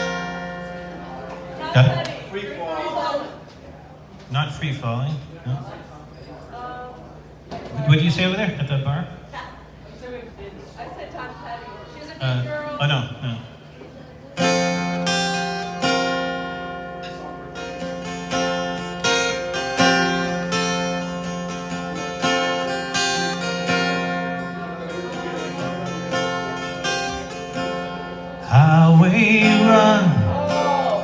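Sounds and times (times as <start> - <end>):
acoustic guitar chords: 0.0 - 3.1, 14.3 - 31.0.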